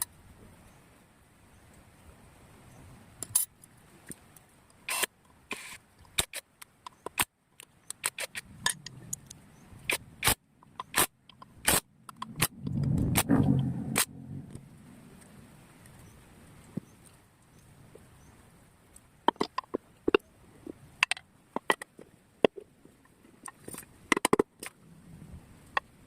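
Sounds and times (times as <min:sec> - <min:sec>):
rattling scrape: 0:12.2 - 0:14.6.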